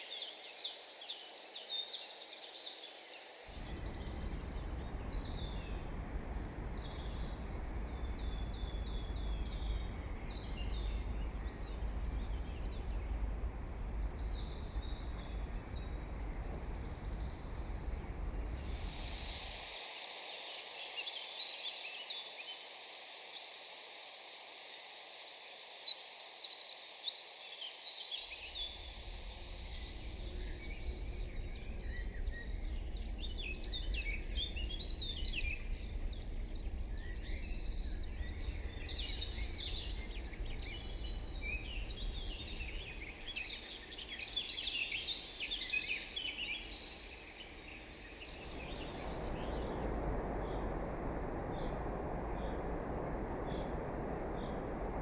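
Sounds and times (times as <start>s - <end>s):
rush of wind: 3.5s - 20.5s, 28.3s - 55.0s
low rumble: 3.6s - 19.1s, 28.5s - 43.4s.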